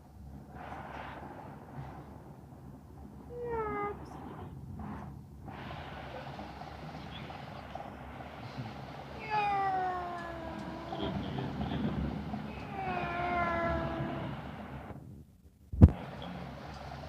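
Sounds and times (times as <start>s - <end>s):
cat meowing: 3.3s - 4.1s, 9.2s - 11.3s, 12.5s - 14.4s.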